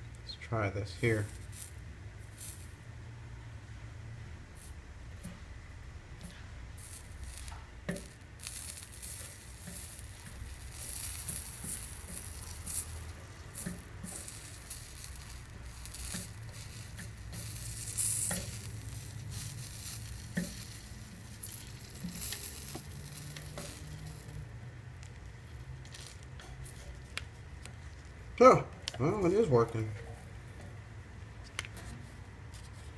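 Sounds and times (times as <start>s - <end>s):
solder sizzling and crackling: 0.0s - 32.9s
small pops: 6.2s - 29.0s.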